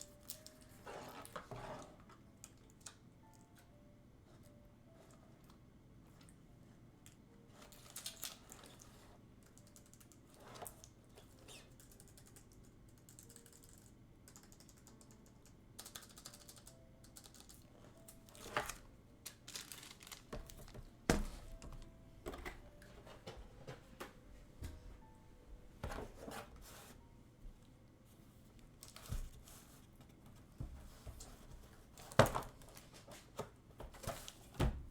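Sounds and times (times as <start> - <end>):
keyboard keys clicking: 9.4 - 18.6.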